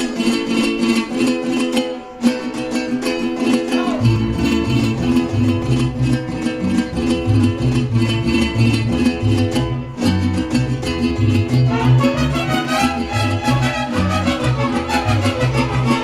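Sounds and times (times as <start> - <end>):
strummed string chords: 0.0 - 16.0
pulsing bass line: 4.1 - 16.0.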